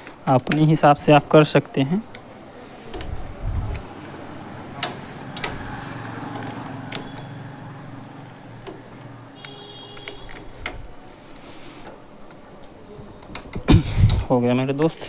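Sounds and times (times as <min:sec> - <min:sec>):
sharp metal clicks: 0:04.8 - 0:05.7, 0:06.3 - 0:07.4.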